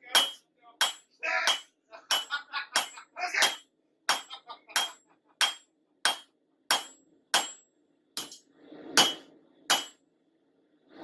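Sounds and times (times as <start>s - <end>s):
hammer striking metal on anvil: 0.0s - 8.4s, 9.0s - 10.0s.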